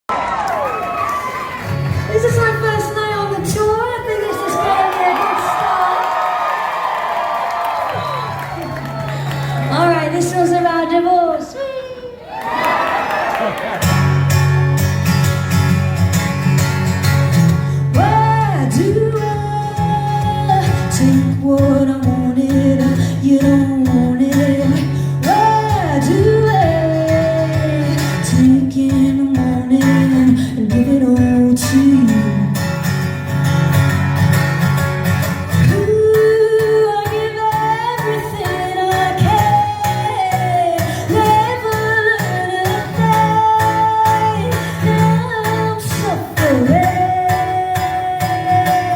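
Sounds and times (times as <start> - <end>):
guitar: 0.1 - 48.9
woman singing lead vocal: 17.9 - 32.7, 35.6 - 48.9.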